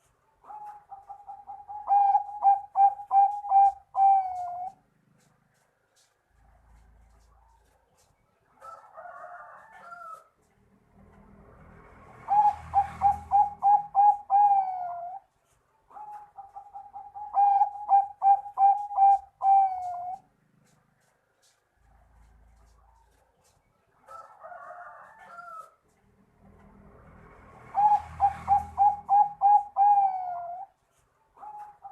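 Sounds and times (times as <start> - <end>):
dove cooing: 0.0 - 5.3, 12.2 - 15.3, 15.9 - 20.8, 27.6 - 30.8, 31.4 - 31.9.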